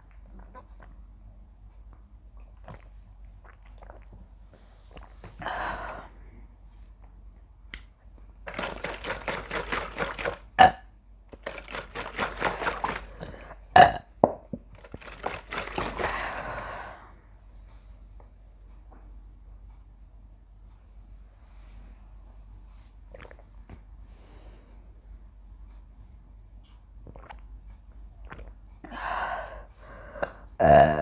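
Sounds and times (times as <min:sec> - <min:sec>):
woman burping: 0:13.8 - 0:14.1, 0:30.2 - 0:31.0.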